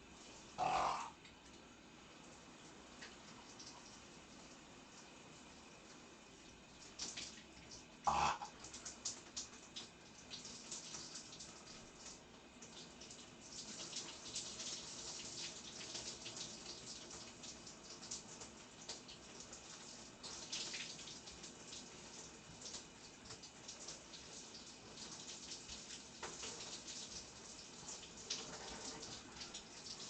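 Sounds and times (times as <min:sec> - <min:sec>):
shower water spraying: 0:06.8 - 0:30.0.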